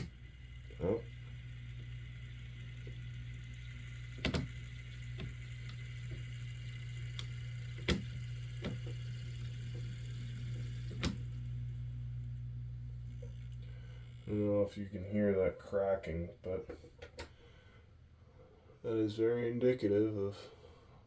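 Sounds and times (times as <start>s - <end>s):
model locomotive motor humming: 0.0s - 16.2s.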